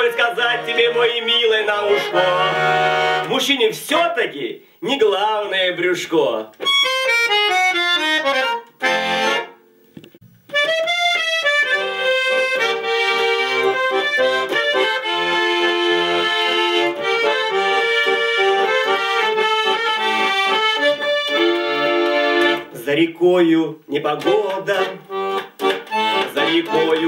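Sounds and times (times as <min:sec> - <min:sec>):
button accordion playing: 0:00.0 - 0:03.6, 0:06.5 - 0:09.6, 0:10.5 - 0:22.8, 0:24.1 - 0:27.0.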